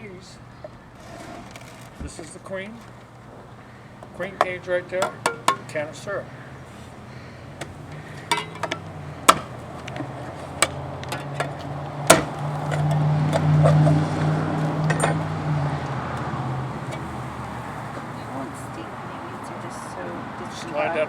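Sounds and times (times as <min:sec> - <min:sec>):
knocks and clinks on wooden box: 0:04.4 - 0:05.8, 0:07.6 - 0:15.2.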